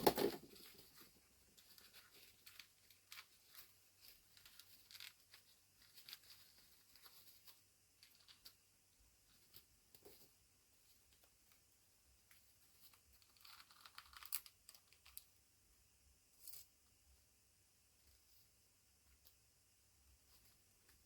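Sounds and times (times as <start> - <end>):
small plastic clicks and rustles: 0.0 - 8.6, 12.2 - 15.3.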